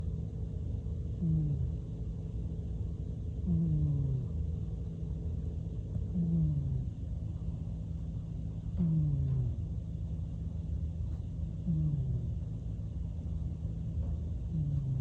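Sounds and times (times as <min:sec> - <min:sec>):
low steady rumble: 0:00.0 - 0:15.0
cat snoring: 0:01.1 - 0:01.9, 0:03.4 - 0:04.5, 0:05.9 - 0:08.0, 0:08.6 - 0:09.7, 0:11.1 - 0:12.6, 0:14.4 - 0:15.0.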